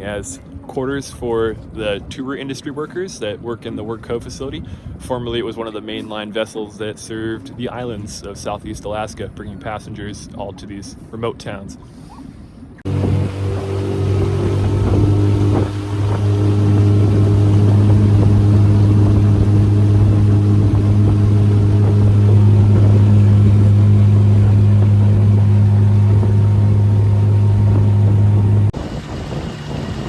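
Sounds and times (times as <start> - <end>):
outboard motor humming: 11.8 - 30.0.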